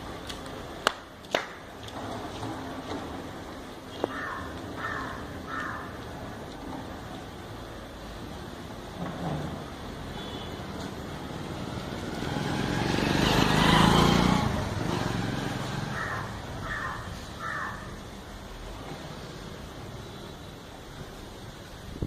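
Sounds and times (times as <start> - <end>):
crows cawing: 4.0 - 6.1, 15.8 - 18.0
vehicle passing by: 10.6 - 17.7.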